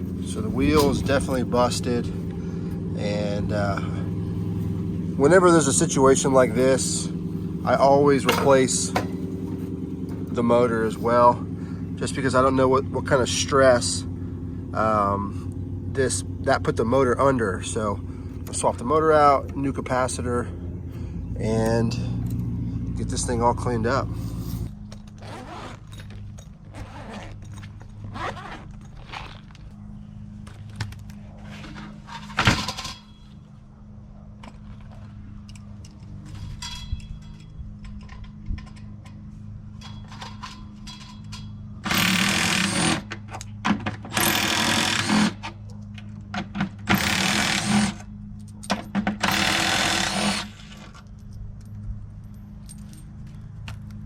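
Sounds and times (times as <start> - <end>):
metal parts knocking: 8.2 - 10.2, 35.5 - 44.8
power drill running: 41.8 - 43.1, 44.1 - 45.4, 46.9 - 48.0, 49.2 - 50.8.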